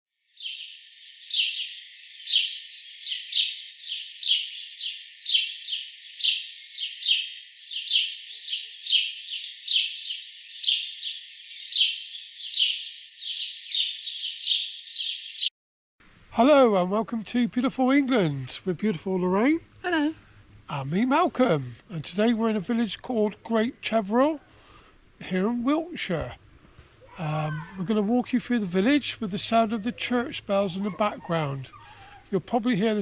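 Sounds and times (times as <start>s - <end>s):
bird chirping: 0.2s - 15.5s, 27.0s - 33.0s.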